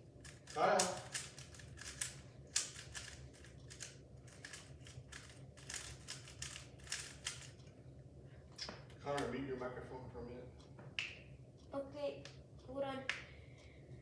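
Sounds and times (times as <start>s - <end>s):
sharp clicks and crackles: 0.1s - 7.7s.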